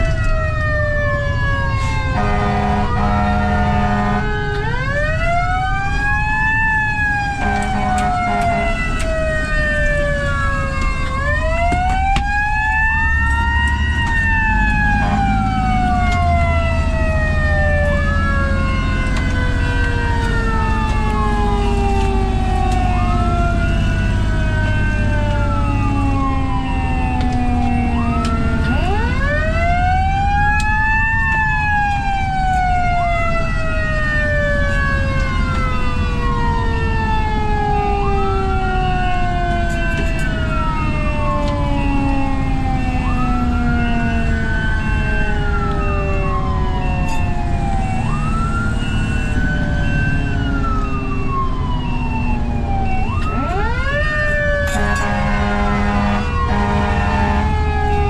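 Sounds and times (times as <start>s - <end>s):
electronic siren wail: 0.0s - 58.0s
mechanical siren winding down: 0.0s - 58.0s
truck engine rumbling: 0.0s - 58.0s
air horn blasts: 2.1s - 4.4s, 7.4s - 9.0s, 14.9s - 15.5s, 54.6s - 57.7s.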